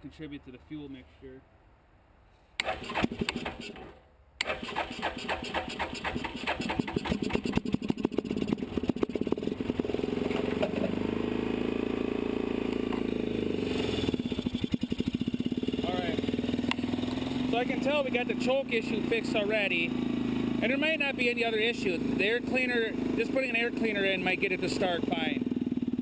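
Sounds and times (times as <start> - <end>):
electric starter cranking engine: 2.6 - 11.6, 12.6 - 15.7
engine fast idling: 4.4 - 12.3, 13.4 - 26.0.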